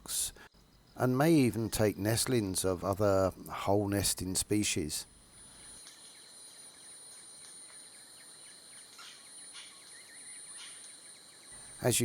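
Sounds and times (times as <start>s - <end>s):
high-pitched insect trill: 4.8s - 12.0s
bird chirps: 5.4s - 11.9s.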